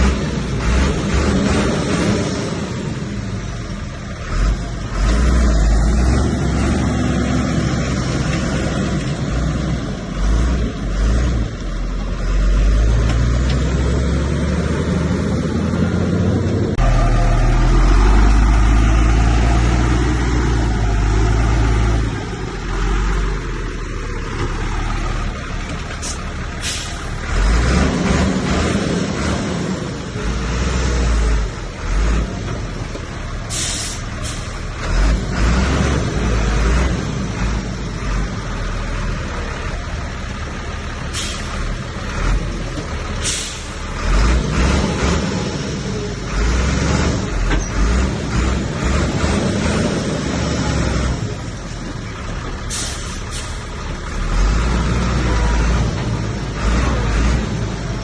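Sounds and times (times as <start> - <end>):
bulldozer diesel engine rumbling: 0.0 - 58.0
air hissing: 33.5 - 34.6, 43.2 - 43.8, 52.7 - 53.6.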